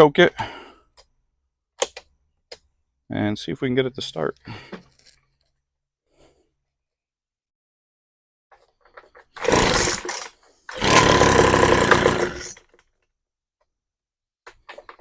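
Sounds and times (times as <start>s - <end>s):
leaf blower engine starting: 9.4s - 12.7s.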